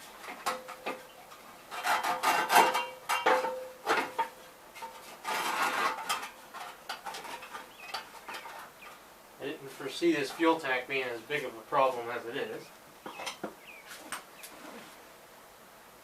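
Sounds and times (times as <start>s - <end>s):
fuel tank scraping and clanking: 1.7s - 8.8s.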